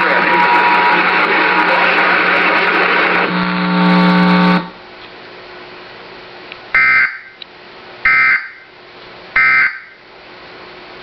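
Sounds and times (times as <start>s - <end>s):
high electronic tone burst: 0.0s - 4.8s
loud buzzing tone: 0.0s - 4.8s, 6.7s - 7.4s, 8.0s - 8.7s, 9.4s - 10.0s
harsh broadcast noise with hum: 0.0s - 11.0s.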